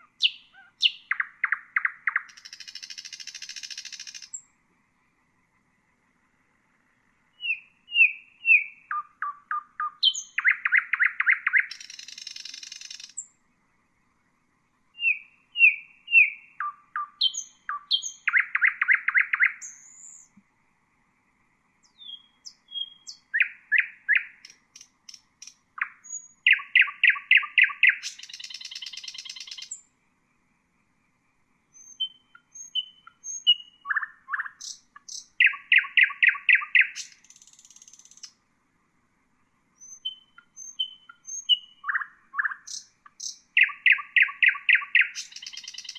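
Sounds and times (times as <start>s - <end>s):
nightingale singing: 0.0s - 4.7s, 5.5s - 13.7s, 14.4s - 20.5s, 21.6s - 38.4s, 39.6s - 45.9s.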